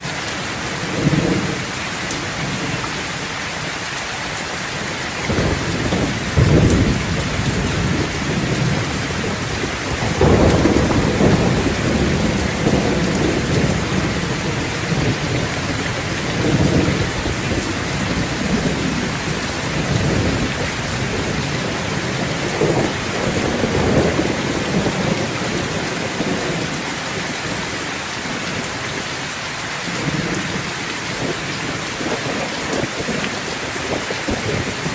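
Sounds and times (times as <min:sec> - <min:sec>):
heavy rain: 0:00.0 - 0:34.9
rolling thunder: 0:05.2 - 0:28.7, 0:29.8 - 0:34.9
sharp thunderclap: 0:05.3 - 0:26.7, 0:33.9 - 0:34.9.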